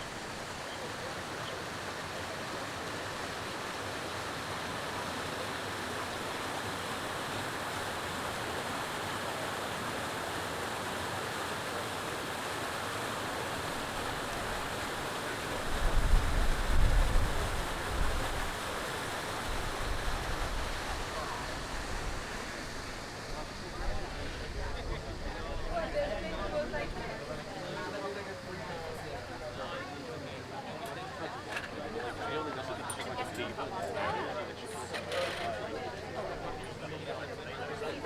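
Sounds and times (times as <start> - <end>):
wind gusts on microphone: 15.5 - 27.3.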